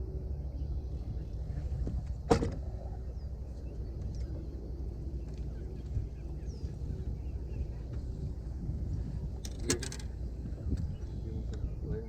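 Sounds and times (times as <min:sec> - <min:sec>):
wind rumble on microphone: 0:00.0 - 0:12.0.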